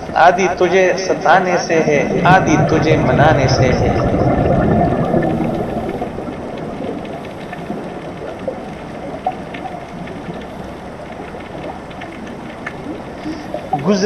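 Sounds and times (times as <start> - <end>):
underwater rushing hiss: 1.7 - 8.6
faint clicks: 4.3 - 14.0.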